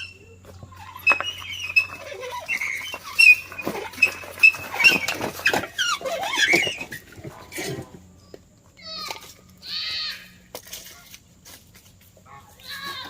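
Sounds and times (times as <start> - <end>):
high-pitched animal calls: 0.0 - 7.2.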